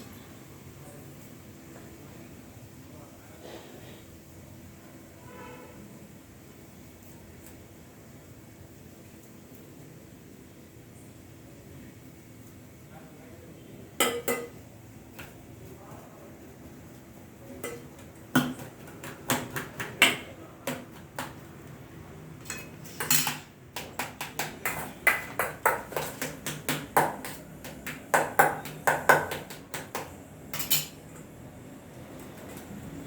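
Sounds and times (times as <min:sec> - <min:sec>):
potatoes being mashed in a bowl: 0:16.8 - 0:21.9, 0:23.2 - 0:30.7.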